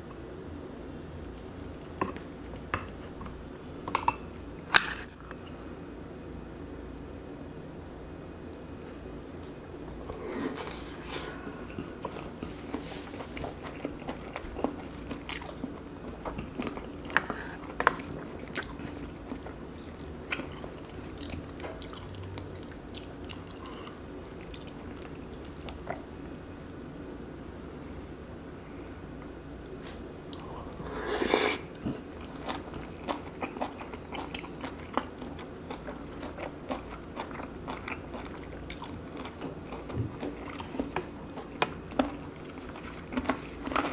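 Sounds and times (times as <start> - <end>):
low room tone hum: 0.0 - 43.9
person chewing food: 1.1 - 3.4, 9.8 - 27.6, 30.3 - 43.9.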